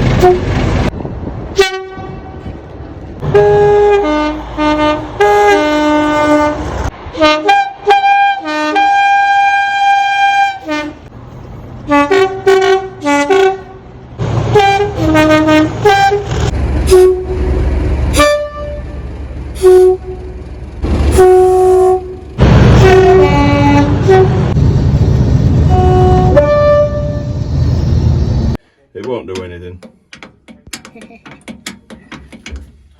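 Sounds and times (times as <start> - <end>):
two-tone locomotive air horn: 0.2 - 0.5, 1.6 - 2.5, 3.2 - 11.1, 11.9 - 13.8, 14.5 - 19.0, 19.6 - 20.4, 21.0 - 24.6, 25.6 - 27.4
low rumble: 16.4 - 28.6.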